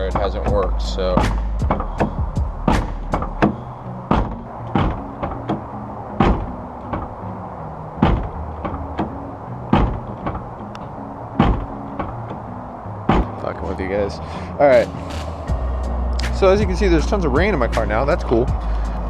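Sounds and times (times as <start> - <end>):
car door knocking open and shut: 0.2 - 7.2, 7.9 - 13.6
car door handle and latch clicking: 1.2 - 13.5.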